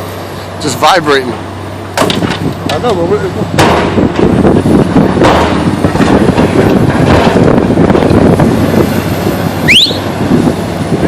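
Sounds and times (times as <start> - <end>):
excavator engine hum: 0.0 - 11.0
rattling and clanking: 1.9 - 9.0
rising squeal: 9.6 - 10.1.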